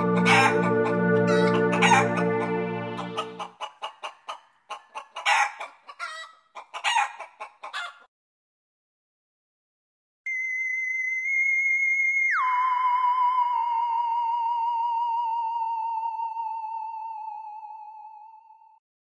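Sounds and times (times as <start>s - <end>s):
high electronic tone with vibrato: 0.0s - 3.4s.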